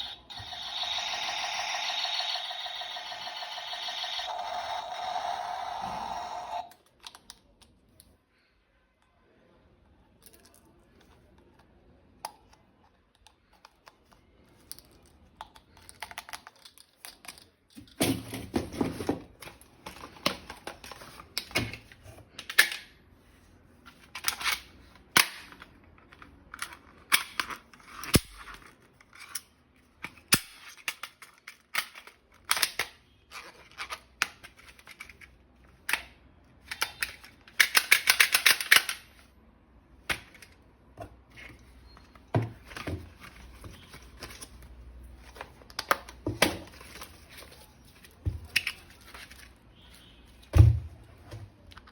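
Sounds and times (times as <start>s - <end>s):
toy gun automatic burst: 0.0s - 6.7s
toy gun clicks and shots: 0.0s - 6.8s, 36.7s - 39.1s.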